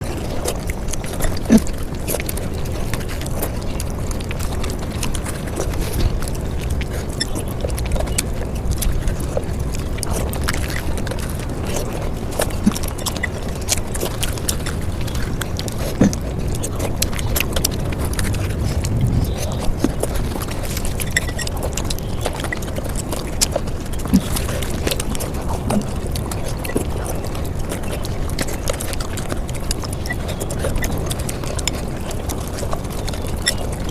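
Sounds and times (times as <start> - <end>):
sped-up chewing clicks and pops: 0.0 - 33.9
low rumble: 14.2 - 23.0.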